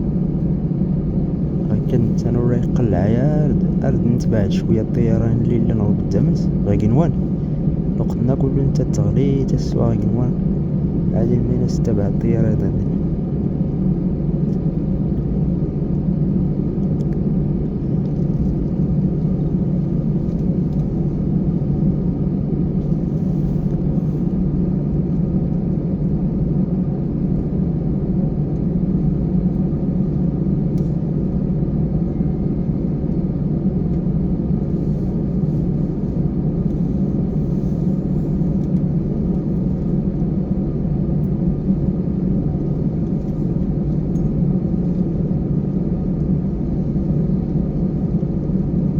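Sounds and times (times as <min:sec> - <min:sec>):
airliner cabin rumble: 0:00.0 - 0:48.9.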